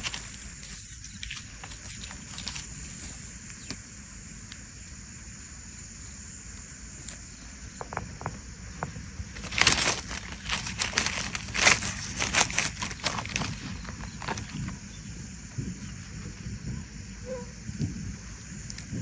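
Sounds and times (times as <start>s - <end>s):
rustling and crunching of leaves: 0.0s - 3.8s, 7.0s - 16.6s.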